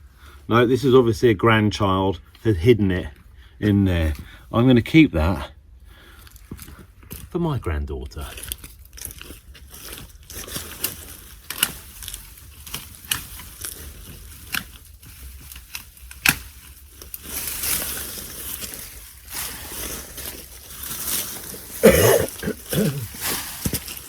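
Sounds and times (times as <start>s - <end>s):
leafy branches rustling: 8.2s - 24.0s
loppers snipping branches: 14.4s - 17.8s.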